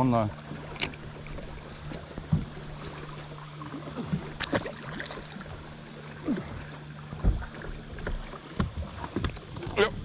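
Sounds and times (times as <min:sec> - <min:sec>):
small water sounds: 0:00.0 - 0:10.0
steady low hum: 0:00.0 - 0:10.0
knocks on boat: 0:01.9 - 0:02.7, 0:07.1 - 0:10.0.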